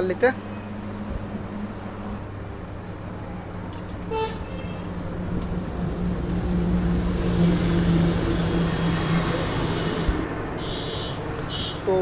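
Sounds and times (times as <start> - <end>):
vehicle engine hum: 0.0 - 12.0
car horn toot: 4.1 - 4.9, 9.6 - 11.9.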